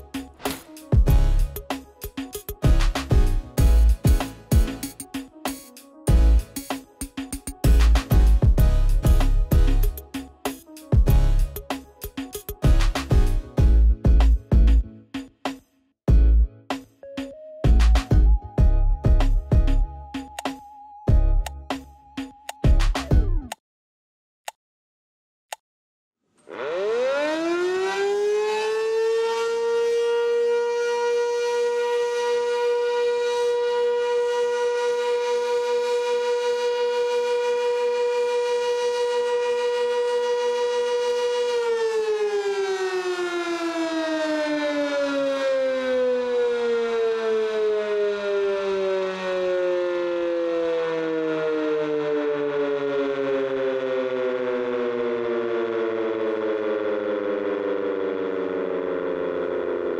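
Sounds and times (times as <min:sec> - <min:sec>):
tornado siren wailing: 0:26.5 - 0:59.9.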